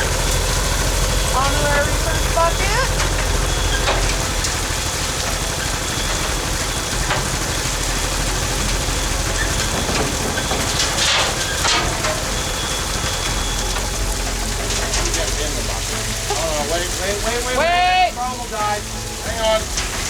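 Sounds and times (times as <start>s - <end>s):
digging machine engine: 0.0s - 20.0s
knocks: 9.4s - 12.4s.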